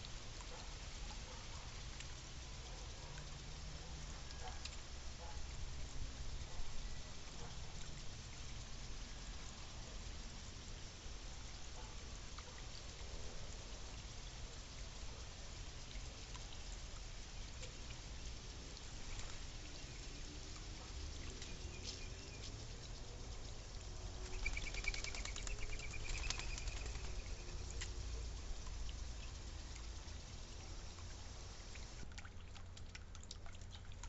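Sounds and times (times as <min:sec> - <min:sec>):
bird chattering trill: 0:24.3 - 0:27.4.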